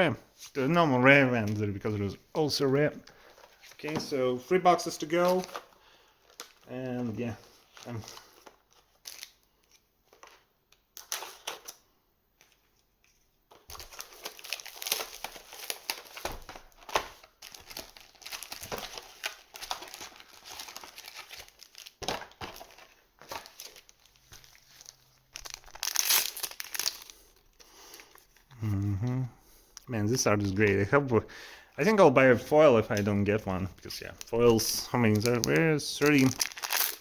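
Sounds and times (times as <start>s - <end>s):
plastic packaging crinkling: 3.1s - 11.8s, 13.5s - 28.5s, 31.9s - 37.0s.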